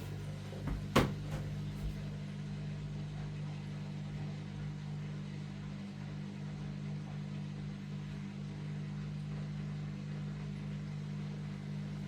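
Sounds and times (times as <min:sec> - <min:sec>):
washing machine humming: 0:00.0 - 0:04.4.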